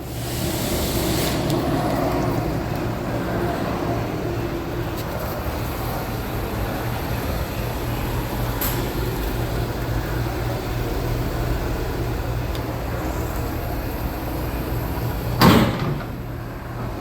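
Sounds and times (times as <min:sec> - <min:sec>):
car engine humming: 0:00.0 - 0:17.0.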